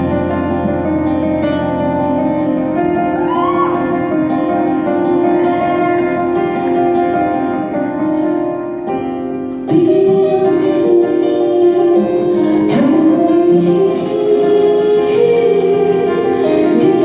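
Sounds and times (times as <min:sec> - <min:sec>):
piano and keyboard chords: 0:00.0 - 0:17.0
woman singing: 0:09.6 - 0:17.0.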